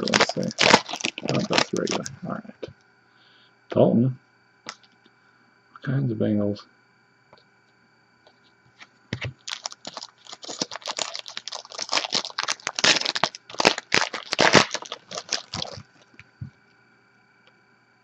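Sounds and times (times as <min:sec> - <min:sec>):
wrapper crinkling and tearing: 0:00.0 - 0:02.1, 0:09.3 - 0:16.2.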